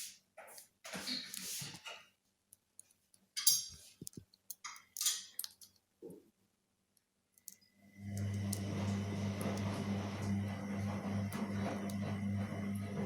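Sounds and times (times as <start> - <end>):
tools and parts clicking: 2.5 - 5.8
bench machine humming: 7.9 - 13.0.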